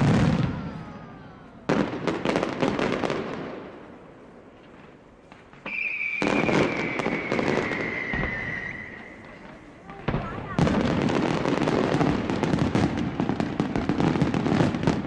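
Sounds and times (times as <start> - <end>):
fireworks crackling: 0.0 - 15.0
firework whistle falling in pitch: 5.6 - 9.3.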